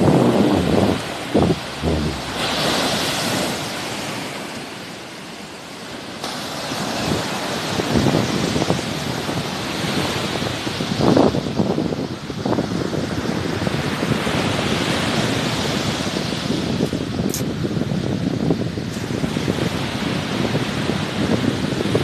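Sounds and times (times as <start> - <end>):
wind buffeting microphone: 0.0 - 3.6
sea waves washing onto shore: 0.0 - 10.2.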